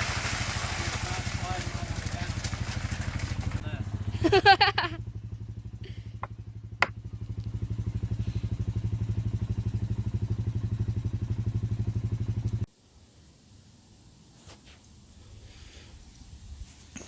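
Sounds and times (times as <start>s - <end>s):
atv engine running: 0.0s - 12.7s.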